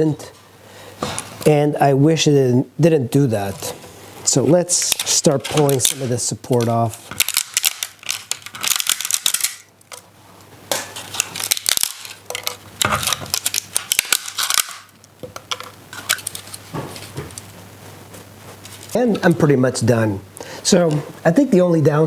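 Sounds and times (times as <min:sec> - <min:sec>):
plastic supports snapping and cracking: 0:04.8 - 0:10.0, 0:10.7 - 0:16.4.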